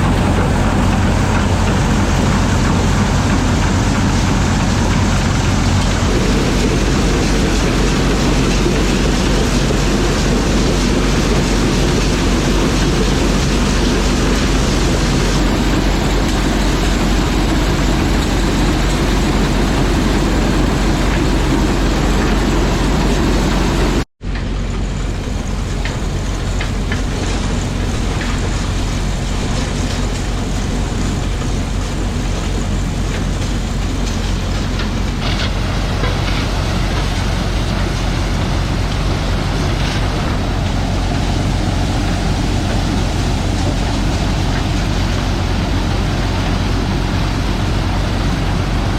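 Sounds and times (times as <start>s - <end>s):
corn sheller running: 0.0s - 48.9s.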